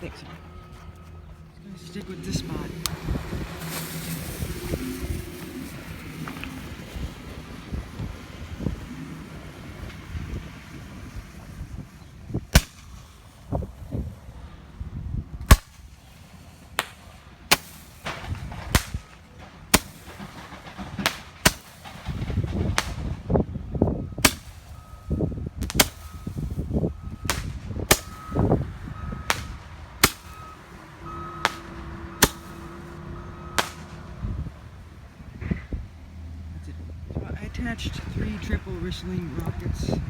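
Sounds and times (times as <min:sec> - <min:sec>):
wind rumble on microphone: 0:01.8 - 0:16.0, 0:18.0 - 0:19.2, 0:21.9 - 0:30.4, 0:31.1 - 0:40.0
fireworks popping: 0:02.4 - 0:08.1, 0:12.4 - 0:14.1, 0:15.4 - 0:23.4, 0:24.2 - 0:28.6, 0:29.2 - 0:30.6, 0:31.4 - 0:32.9, 0:33.6 - 0:34.1.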